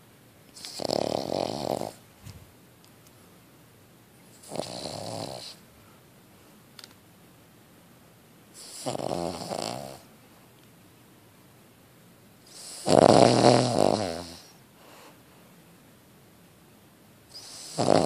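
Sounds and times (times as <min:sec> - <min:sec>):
dog snoring: 0:00.6 - 0:02.0, 0:04.3 - 0:05.6, 0:08.6 - 0:10.1, 0:12.4 - 0:14.6, 0:17.3 - 0:18.0.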